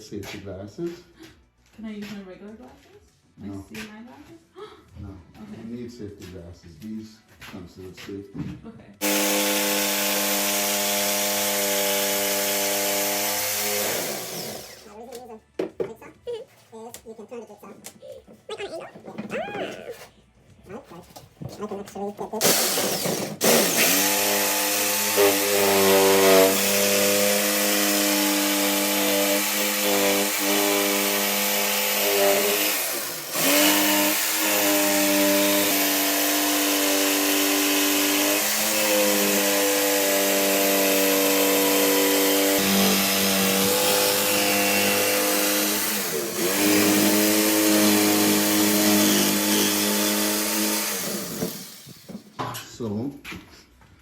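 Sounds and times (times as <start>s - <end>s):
power saw cutting wood: 9.0s - 15.0s, 22.4s - 52.3s.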